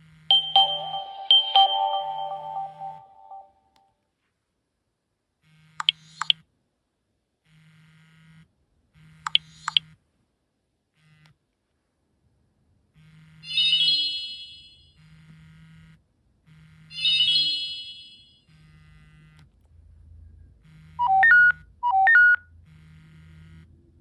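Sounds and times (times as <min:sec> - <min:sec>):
bright chiming phone alert: 0:00.3 - 0:03.6, 0:13.5 - 0:14.9, 0:17.0 - 0:18.4.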